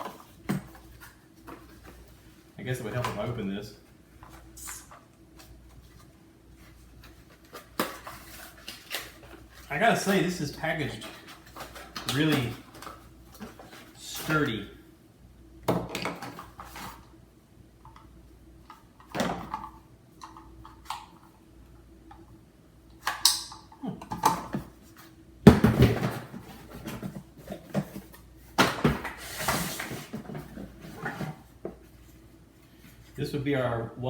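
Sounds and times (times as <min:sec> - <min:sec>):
packaging rustling and scraping: 0:04.2 - 0:14.5, 0:25.8 - 0:33.2.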